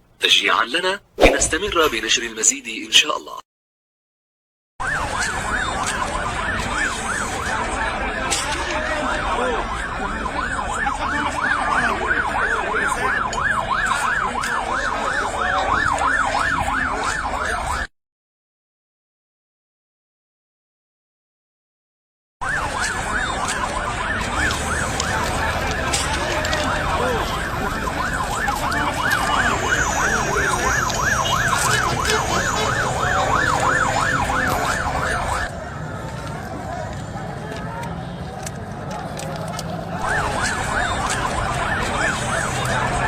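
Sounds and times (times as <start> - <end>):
emergency siren yelping: 4.8 - 17.9, 22.4 - 36.6, 40.0 - 43.0.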